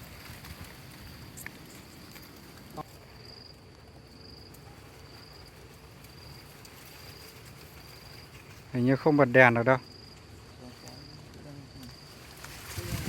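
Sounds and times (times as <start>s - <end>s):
insect chirping: 0.0s - 13.0s
quiet outdoor hiss: 0.0s - 13.0s.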